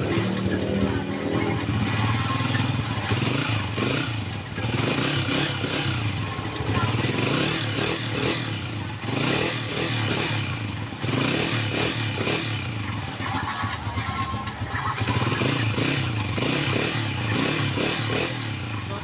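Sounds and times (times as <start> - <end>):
motorcycle engine running: 0.0 - 19.0.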